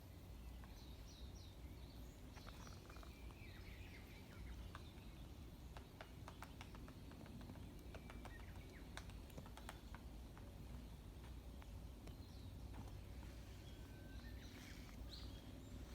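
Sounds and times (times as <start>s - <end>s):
small birds chirping: 0.0s - 15.9s
woodpecker tapping on tree: 4.3s - 13.4s.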